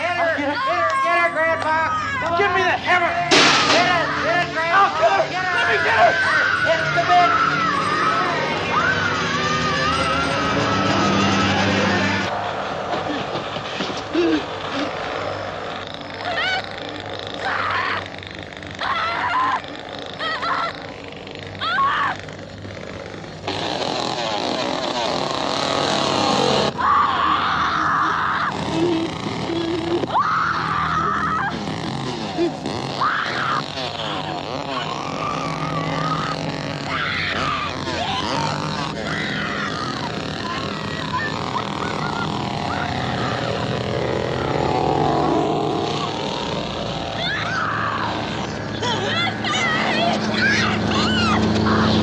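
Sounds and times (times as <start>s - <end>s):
motor running: 0.0s - 52.0s
large vehicle rushing past: 2.9s - 15.8s, 39.0s - 52.0s
high scream: 3.6s - 12.2s, 26.6s - 28.6s, 30.1s - 31.6s, 32.9s - 43.7s, 44.3s - 48.5s.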